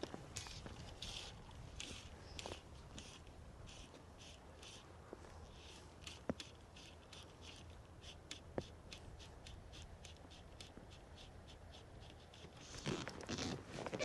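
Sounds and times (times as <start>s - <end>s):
fly line swishing through rod guides: 0.0s - 4.8s.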